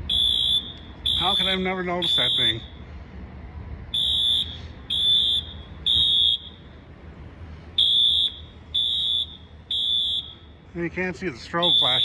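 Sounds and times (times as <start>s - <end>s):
fire alarm beeping: 0.0s - 2.7s, 4.0s - 6.6s, 7.8s - 10.4s, 11.6s - 12.0s.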